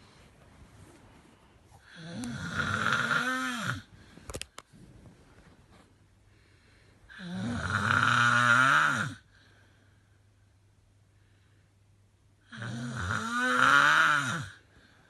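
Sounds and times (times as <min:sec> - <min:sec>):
person snoring heavily: 0:01.8 - 0:03.9, 0:07.1 - 0:09.3, 0:12.5 - 0:14.6.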